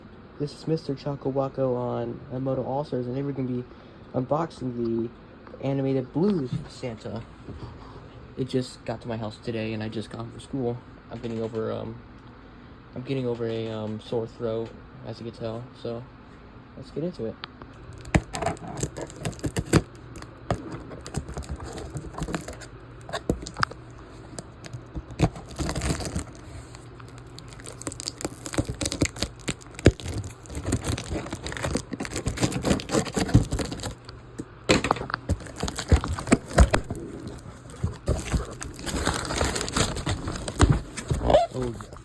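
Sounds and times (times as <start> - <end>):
packing crinkling: 17.8 - 42.0
cardboard tearing: 17.9 - 34.1, 34.7 - 42.0.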